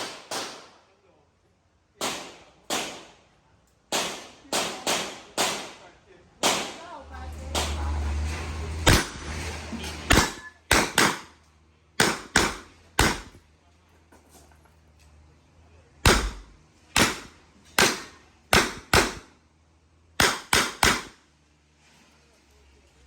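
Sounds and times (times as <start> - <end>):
handgun shots: 8.9 - 9.2, 10.1 - 11.3, 12.0 - 13.4, 16.1 - 19.3, 20.2 - 21.2.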